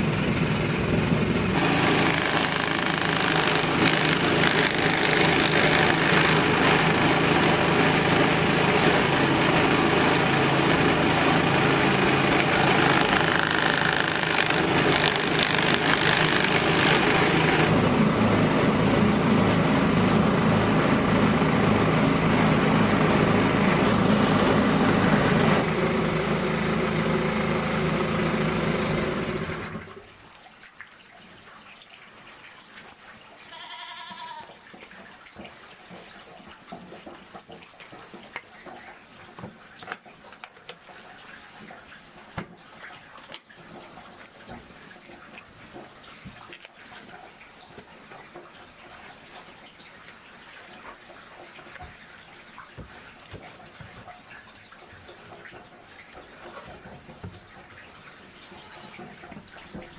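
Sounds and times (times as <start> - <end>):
motor running: 0.0 - 17.9
small clicks: 1.6 - 7.0, 12.3 - 17.7.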